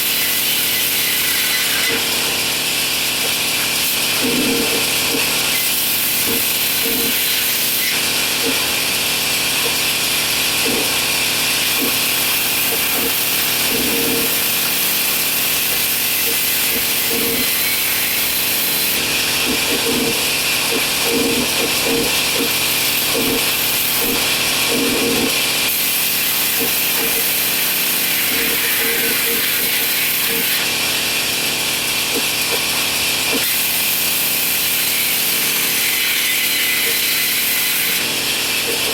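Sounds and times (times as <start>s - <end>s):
power tool cutting wood: 0.0s - 38.9s.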